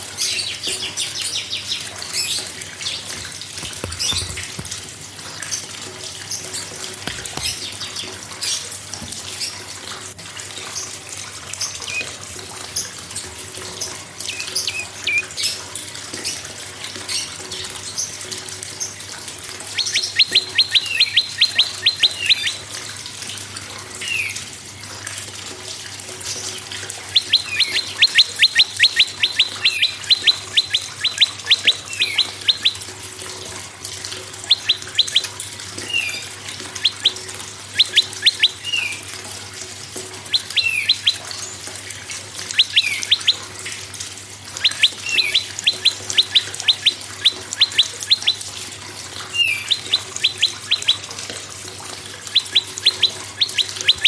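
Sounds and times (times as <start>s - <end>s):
bird singing ticking notes: 0.2s - 4.8s, 6.3s - 8.6s, 14.3s - 15.6s, 19.6s - 22.7s, 27.0s - 33.1s, 34.4s - 39.1s, 40.2s - 43.9s, 44.6s - 51.4s, 52.1s - 54.0s
bird chirps: 19.8s - 22.6s, 27.1s - 32.8s, 34.5s - 39.0s, 40.3s - 41.6s, 42.5s - 43.4s, 44.6s - 48.4s, 49.3s - 51.0s, 52.3s - 54.0s.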